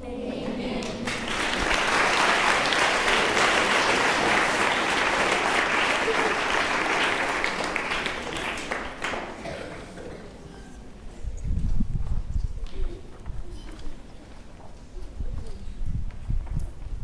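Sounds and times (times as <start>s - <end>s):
audience applauding: 0.8s - 9.8s.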